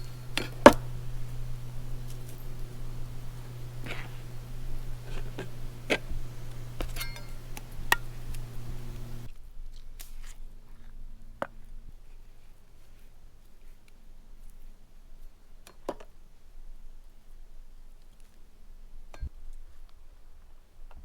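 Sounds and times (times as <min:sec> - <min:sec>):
low steady hum: 0:00.0 - 0:09.3.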